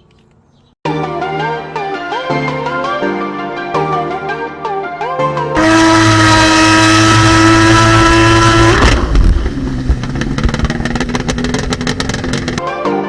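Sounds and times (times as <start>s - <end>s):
jet ski engine running: 5.6s - 12.6s.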